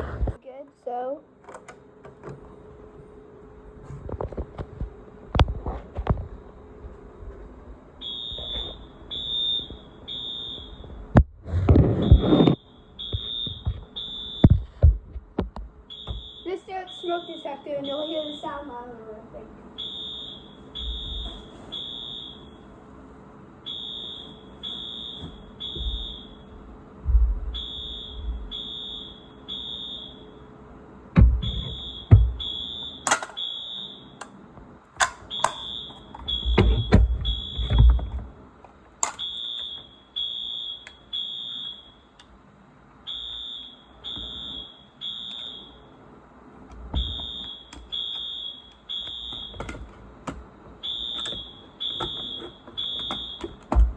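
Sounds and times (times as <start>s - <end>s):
fire alarm beeping: 8.0s - 11.1s, 11.9s - 14.9s, 15.8s - 18.6s, 19.8s - 22.8s, 23.6s - 26.6s, 27.5s - 30.5s, 31.4s - 34.4s, 35.0s - 38.2s, 39.0s - 42.2s, 43.0s - 46.0s, 46.8s - 53.9s
knocks and thumps: 31.2s - 32.5s, 35.0s - 38.3s, 51.2s - 53.9s.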